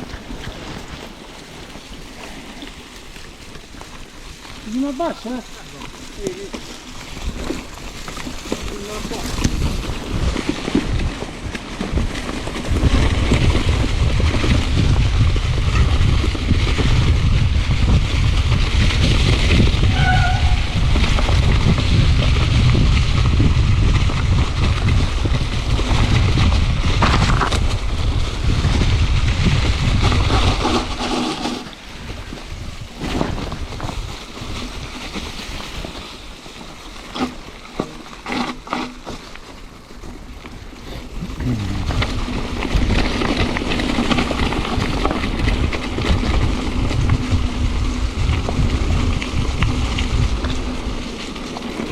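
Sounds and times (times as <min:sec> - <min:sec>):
bike tyres rolling on trail: 0:00.0 - 0:51.9
bike clicks and knocks: 0:05.8 - 0:17.1, 0:20.8 - 0:28.9, 0:29.7 - 0:32.3, 0:33.0 - 0:41.0
wind buffeting microphone: 0:07.0 - 0:31.1, 0:31.8 - 0:35.0, 0:40.6 - 0:51.9.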